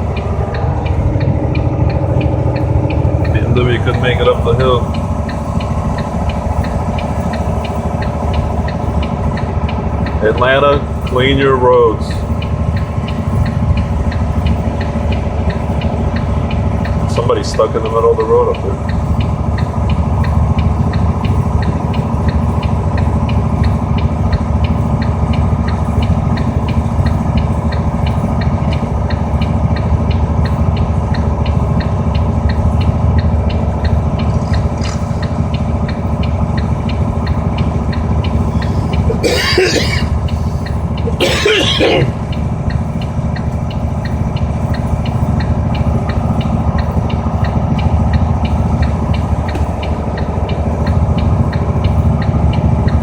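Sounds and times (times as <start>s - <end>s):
car engine and road rumble: 0.0s - 53.0s
faint even ticking: 0.0s - 53.0s
person coughing: 39.1s - 40.2s, 41.1s - 42.2s.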